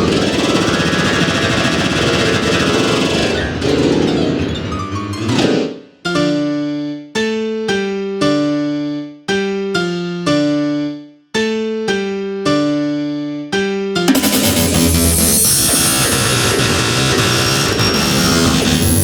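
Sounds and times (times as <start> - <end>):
piano-like keyboard melody: 2.5 - 17.2.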